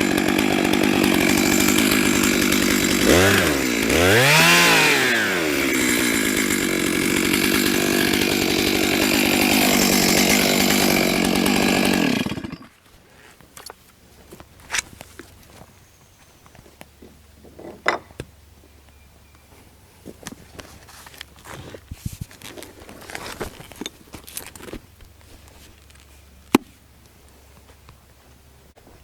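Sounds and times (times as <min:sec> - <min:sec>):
chainsaw cutting wood: 0:00.0 - 0:15.7, 0:20.1 - 0:26.8.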